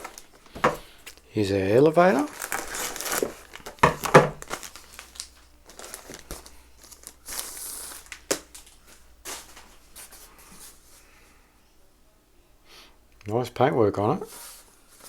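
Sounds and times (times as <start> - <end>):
plastic packaging crinkling: 0.0 - 10.8.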